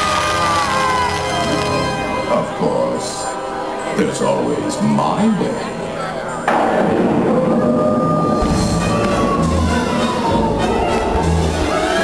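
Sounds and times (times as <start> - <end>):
music over loudspeakers: 0.0 - 12.0
loud musical hit: 6.5 - 12.0.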